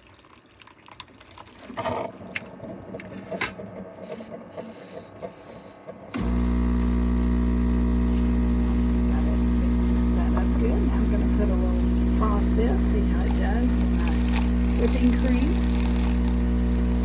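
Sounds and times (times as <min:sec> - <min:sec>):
milk frother humming: 0:04.1 - 0:17.0.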